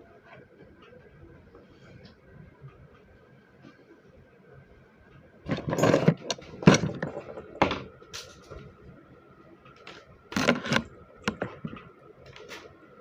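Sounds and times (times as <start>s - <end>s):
small objects knocking and clattering: 5.5s - 8.6s.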